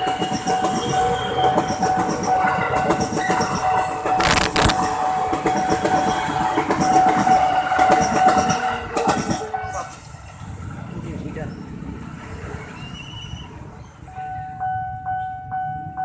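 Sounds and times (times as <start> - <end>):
train wheels clattering on rails: 0.0 - 4.0, 5.1 - 10.9
loud burst of noise: 4.2 - 4.8.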